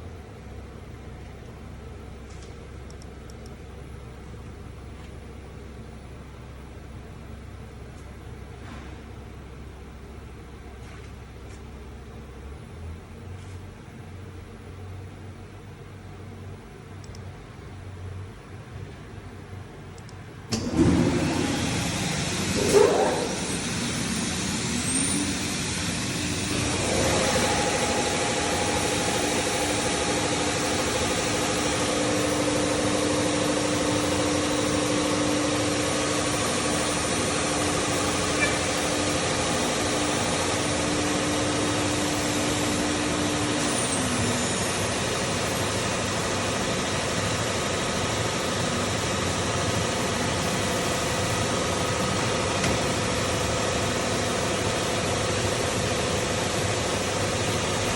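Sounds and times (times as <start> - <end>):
machine whirring and humming: 0.0 - 57.9.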